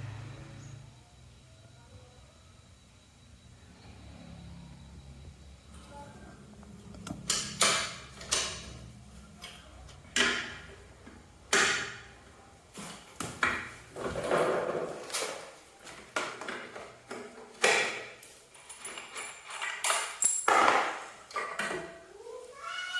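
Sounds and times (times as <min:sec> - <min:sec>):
faint low hum: 0:00.0 - 0:15.0
metal tools clinking: 0:18.4 - 0:20.8.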